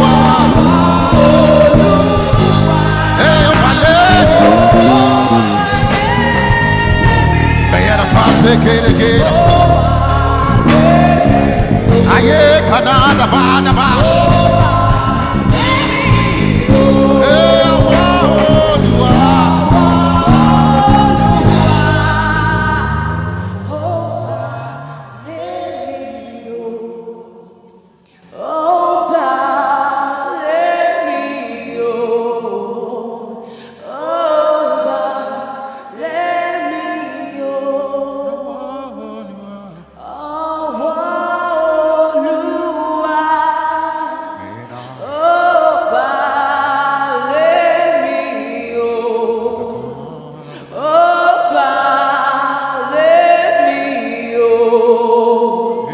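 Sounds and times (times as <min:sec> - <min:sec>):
band with deep bass: 0:00.0 - 0:25.3
voices singing held phrases: 0:00.0 - 0:27.2, 0:33.9 - 0:55.9.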